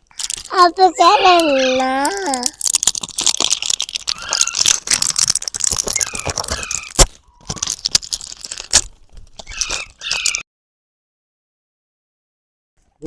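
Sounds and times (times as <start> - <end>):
crackling and crunching: 0.0 - 10.4
parrot chirping: 5.9 - 7.5, 9.4 - 10.4.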